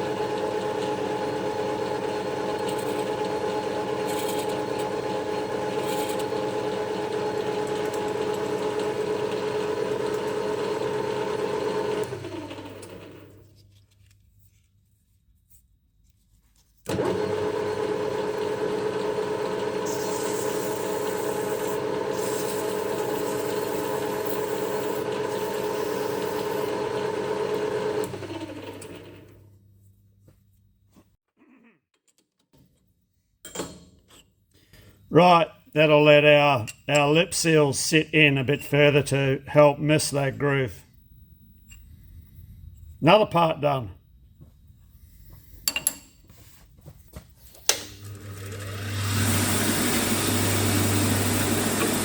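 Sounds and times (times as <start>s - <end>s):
electric motor humming: 16.9s - 28.5s, 47.8s - 52.0s.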